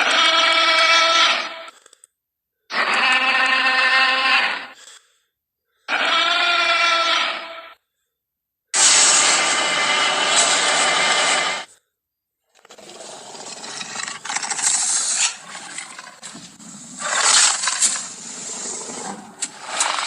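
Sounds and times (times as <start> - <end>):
loud harsh dinosaur roar: 8.8 - 11.7, 17.0 - 20.0
rough uneven growl: 12.7 - 20.0.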